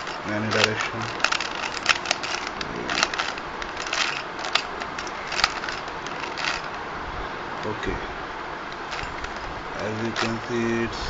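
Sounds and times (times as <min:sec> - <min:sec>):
plastic puzzle cube twisting clicks: 0:00.0 - 0:06.8.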